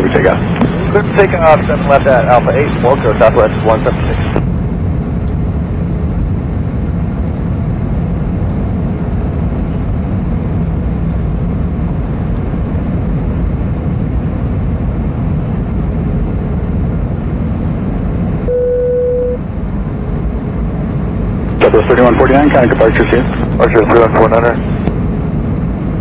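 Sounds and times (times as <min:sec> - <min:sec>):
airplane cabin engine roar: 0:00.0 - 0:26.0
faint steady hum: 0:18.1 - 0:26.0.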